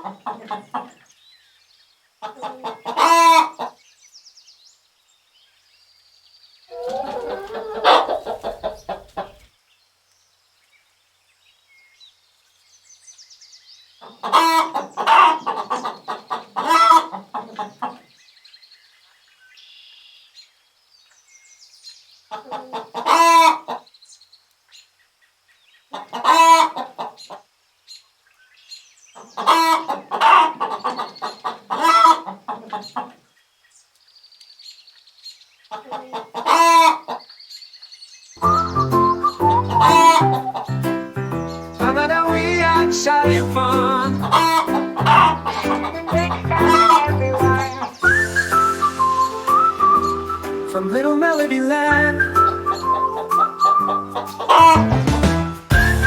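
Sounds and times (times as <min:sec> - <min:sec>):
chickens clucking: 0:00.0 - 0:01.0, 0:02.2 - 0:03.8, 0:06.7 - 0:09.5, 0:14.0 - 0:18.1, 0:22.3 - 0:23.9, 0:25.9 - 0:27.4, 0:29.2 - 0:33.2, 0:35.7 - 0:37.3, 0:38.4 - 0:55.4
faint high chirps: 0:38.4 - 0:43.2, 0:47.4 - 0:56.0.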